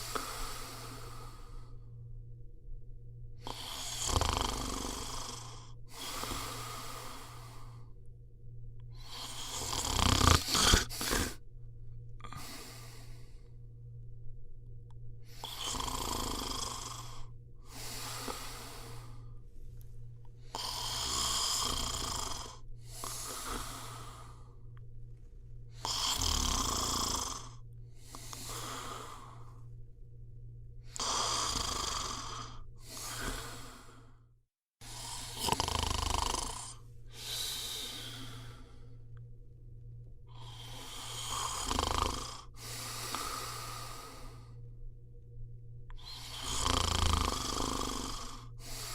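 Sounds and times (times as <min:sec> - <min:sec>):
person snoring: 0:00.0 - 0:01.9, 0:03.4 - 0:08.0, 0:08.9 - 0:11.4, 0:12.2 - 0:13.5, 0:15.3 - 0:19.4, 0:20.4 - 0:24.7, 0:25.7 - 0:29.7, 0:30.8 - 0:34.2, 0:34.8 - 0:39.2, 0:40.3 - 0:44.6, 0:45.9 - 0:48.9.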